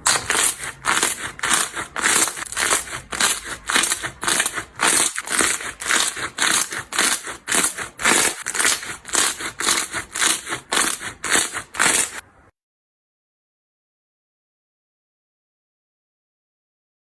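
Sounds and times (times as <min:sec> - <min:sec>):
slime squelching and crunching: 0:00.0 - 0:12.2.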